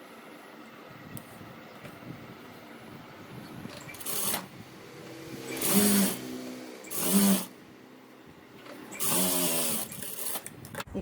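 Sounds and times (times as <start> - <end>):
sewing machine stitching: 3.9 - 4.5, 5.5 - 6.2, 6.8 - 7.5, 8.6 - 10.5.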